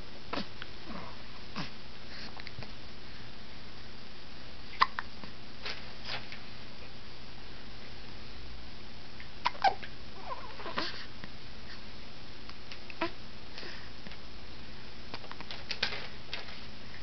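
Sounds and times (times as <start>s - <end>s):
baby hiccuping: 4.8s - 5.0s, 9.4s - 11.0s.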